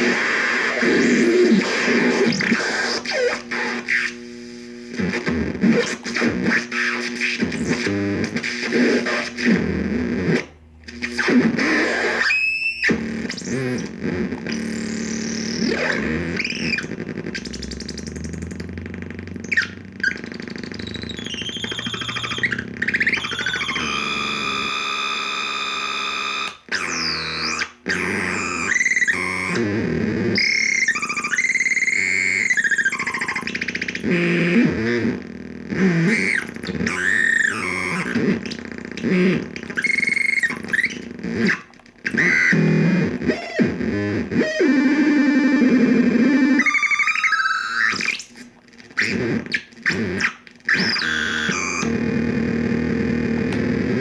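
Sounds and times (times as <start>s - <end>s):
harsh synthesizer noise: 0.0s - 48.2s
synthesizer drone: 12.8s - 24.8s.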